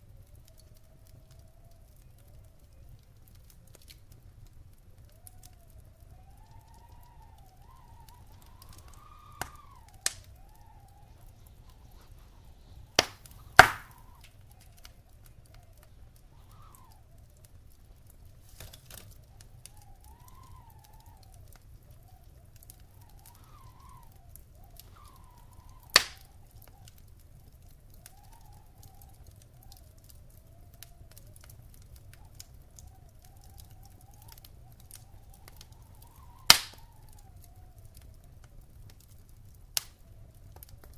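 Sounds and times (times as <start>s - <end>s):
fire popping: 0.0s - 40.9s
wood fire crackling: 0.0s - 40.9s
faint wavering whistle: 5.0s - 17.7s, 18.9s - 26.9s, 27.8s - 38.0s
steady low rumble: 5.6s - 16.5s.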